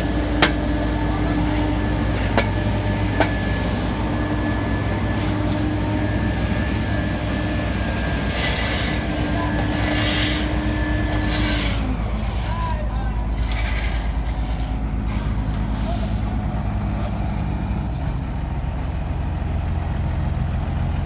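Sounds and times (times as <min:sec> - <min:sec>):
heavy engine rumbling: 0:00.0 - 0:21.0.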